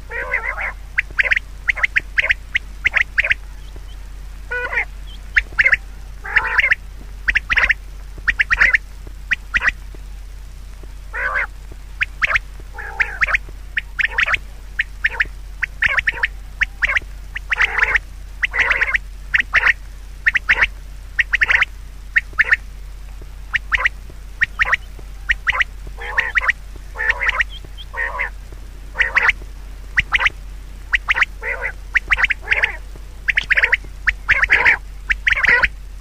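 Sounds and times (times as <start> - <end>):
birds calling: 0.0 - 36.0
steady low hum: 0.0 - 36.0.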